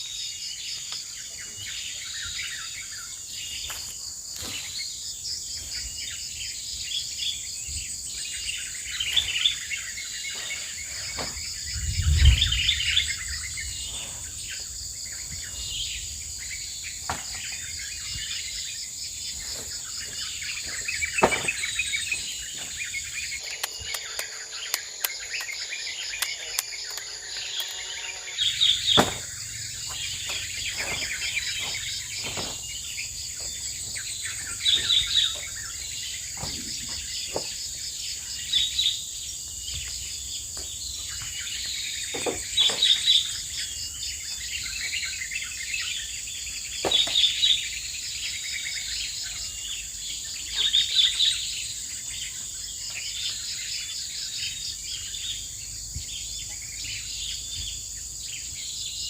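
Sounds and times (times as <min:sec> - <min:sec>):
insects droning: 0:00.0 - 0:59.0
sharp knocks: 0:21.2 - 0:21.7, 0:28.9 - 0:29.3.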